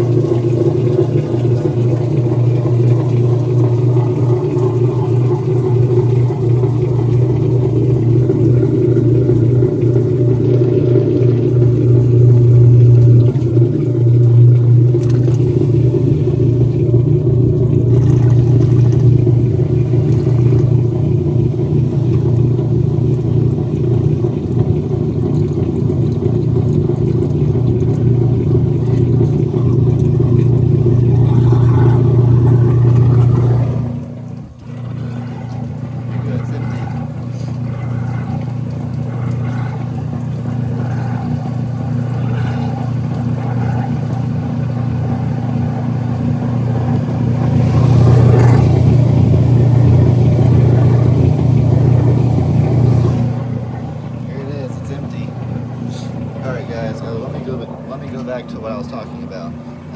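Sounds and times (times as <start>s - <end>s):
washer drain pump humming: 0.0s - 59.9s.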